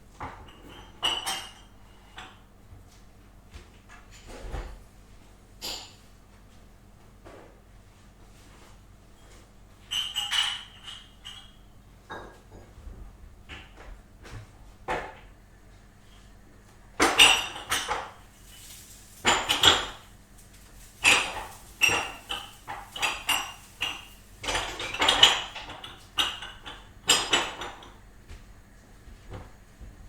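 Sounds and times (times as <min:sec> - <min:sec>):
dishes and cutlery clattering: 0:00.2 - 0:02.4, 0:09.9 - 0:12.8, 0:17.0 - 0:20.1, 0:20.9 - 0:28.0.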